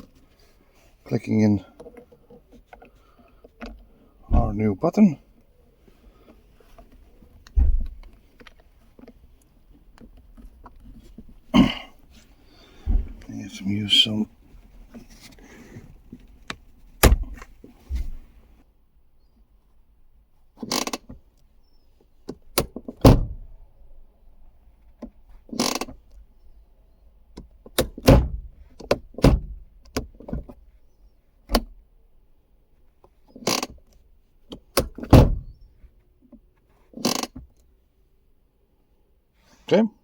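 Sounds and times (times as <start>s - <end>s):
handbrake lever clicks and knocks: 16.4s - 17.5s, 22.2s - 23.4s, 25.0s - 26.2s, 27.4s - 30.6s, 31.4s - 31.8s, 33.0s - 35.7s.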